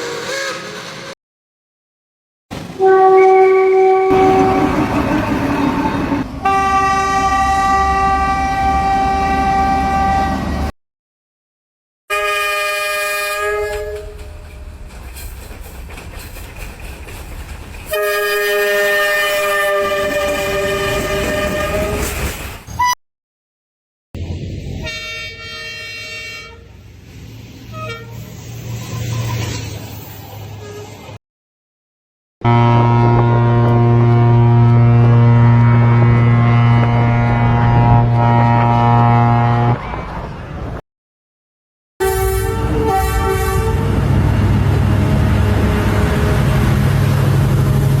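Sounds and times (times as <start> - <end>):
train rumbling on rails: 0.0 - 1.2, 2.5 - 10.7, 12.8 - 22.9, 24.2 - 31.2, 32.5 - 40.8, 42.0 - 48.0
train horn chord: 2.8 - 4.8, 6.4 - 10.7, 12.1 - 14.4, 17.9 - 22.0, 24.8 - 26.7, 32.4 - 39.8, 42.0 - 48.0.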